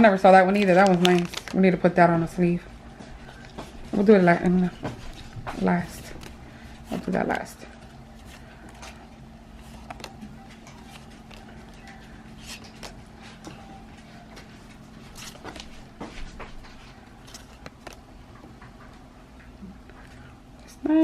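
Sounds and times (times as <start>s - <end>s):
trading cards being flipped: 0.5s - 1.6s, 4.8s - 18.6s.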